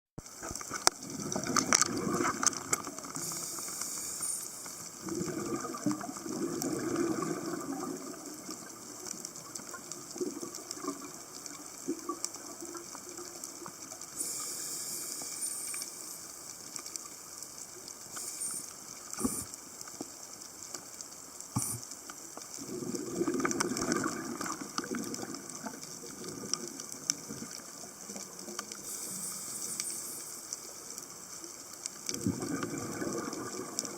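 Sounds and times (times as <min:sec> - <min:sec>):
water gushing and bubbling: 0:00.2 - 0:17.2, 0:22.4 - 0:33.9.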